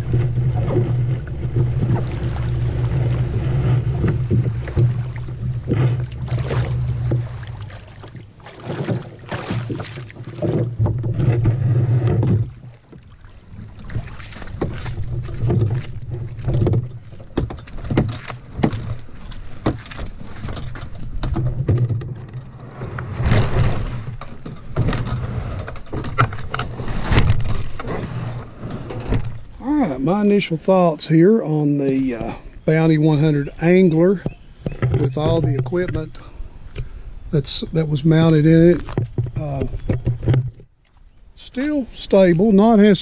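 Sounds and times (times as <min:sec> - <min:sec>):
water splashing: 0:00.0 - 0:43.0
knocks against kayak hull: 0:00.1 - 0:13.0, 0:13.8 - 0:22.5, 0:33.9 - 0:36.2, 0:38.7 - 0:40.7.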